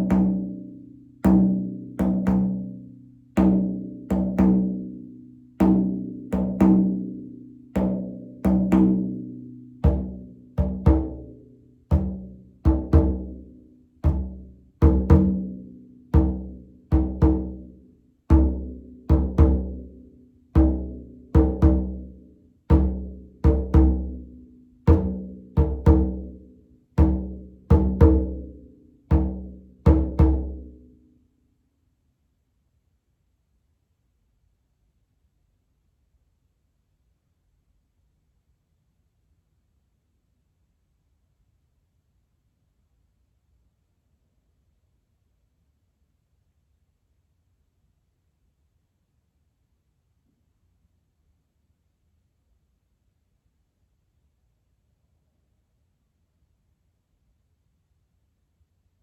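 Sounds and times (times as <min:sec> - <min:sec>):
frame drum beat: 0:01.2 - 0:02.7, 0:03.4 - 0:04.8, 0:05.6 - 0:07.1, 0:07.8 - 0:09.2, 0:09.8 - 0:13.4, 0:14.0 - 0:17.7, 0:18.3 - 0:19.9, 0:20.6 - 0:22.1, 0:22.7 - 0:24.3, 0:24.9 - 0:26.4, 0:27.0 - 0:28.5, 0:29.1 - 0:30.7.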